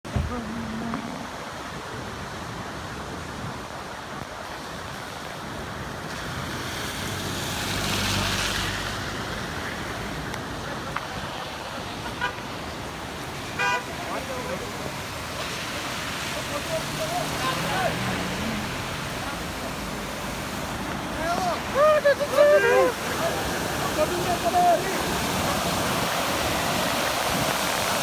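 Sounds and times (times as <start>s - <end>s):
road traffic noise: 0.0s - 28.0s
vehicle passing: 6.5s - 10.3s, 13.4s - 28.0s.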